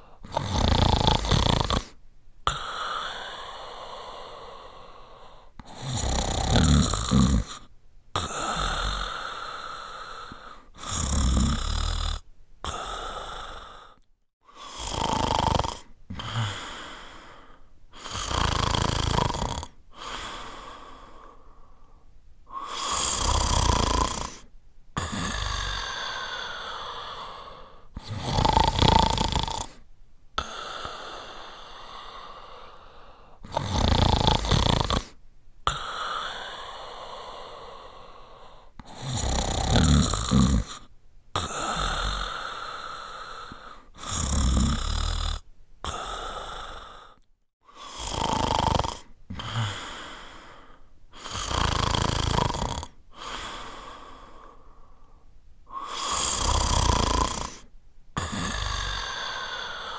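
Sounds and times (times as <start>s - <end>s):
person snoring: 0.0s - 29.8s, 30.4s - 59.9s
soft breathing: 1.2s - 6.0s, 7.0s - 11.0s, 12.6s - 14.9s, 16.1s - 18.2s, 19.8s - 28.2s, 29.6s - 33.5s, 34.4s - 39.2s, 40.2s - 44.2s, 45.4s - 48.2s, 49.0s - 51.6s, 52.9s - 59.9s.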